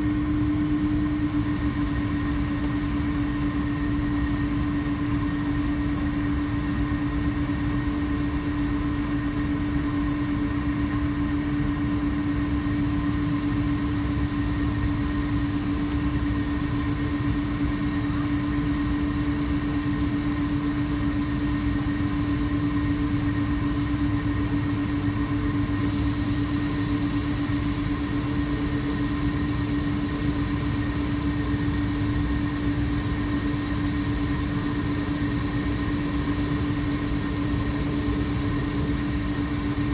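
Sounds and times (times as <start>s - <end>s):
jet engines humming: 0.0s - 39.9s.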